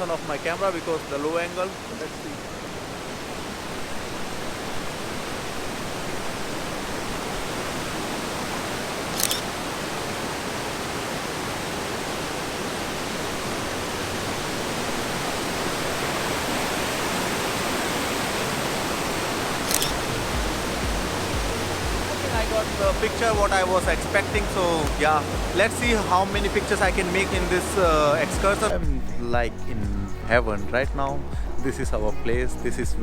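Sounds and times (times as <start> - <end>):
waterfall rushing: 0.0 - 29.6
camera shutter clicks: 9.2 - 9.5, 19.7 - 20.0.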